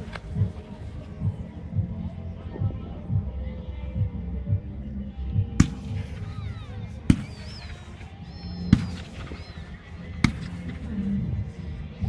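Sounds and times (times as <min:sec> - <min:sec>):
music playing: 0:00.0 - 0:12.0
fireworks bursting: 0:05.6 - 0:10.9.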